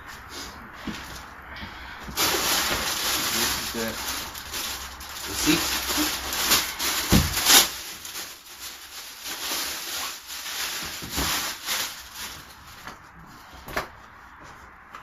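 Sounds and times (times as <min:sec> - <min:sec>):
plastic packaging crinkling: 0:02.1 - 0:13.0.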